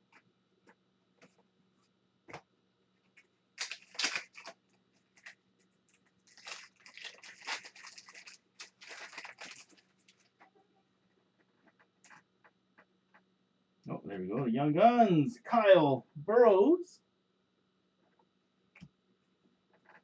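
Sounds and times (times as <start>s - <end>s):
foil wrapper tearing: 3.6s - 5.4s, 6.2s - 10.3s
foil wrapper crinkling: 3.6s - 10.3s.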